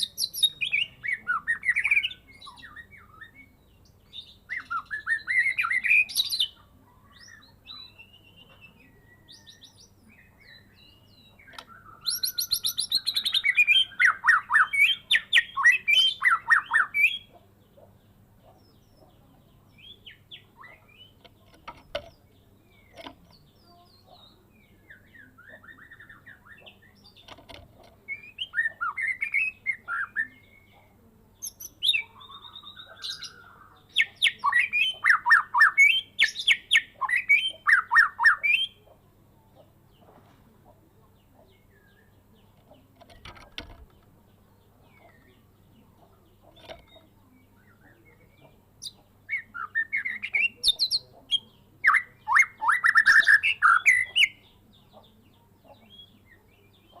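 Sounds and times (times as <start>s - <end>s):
bird singing whistles and trills: 0.0s - 17.3s, 28.1s - 30.7s, 31.4s - 38.8s, 46.7s - 55.0s.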